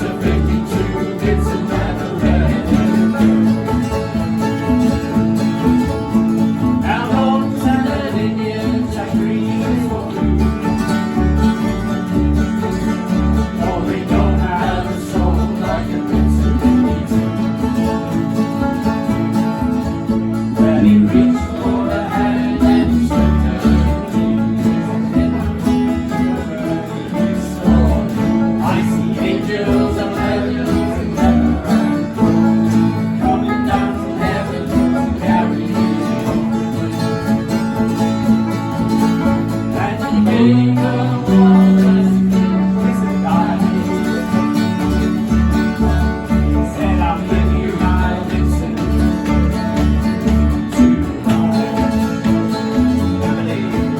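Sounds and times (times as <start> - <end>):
bluegrass guitar music: 0.0 - 53.9
person singing: 39.7 - 44.6, 45.5 - 49.5.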